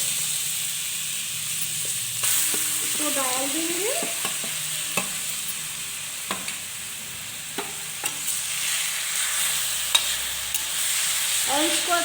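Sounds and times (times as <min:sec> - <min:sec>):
paste sizzling in hot fat: 0:00.0 - 0:12.0
spoon knocking against pan: 0:06.3 - 0:06.6.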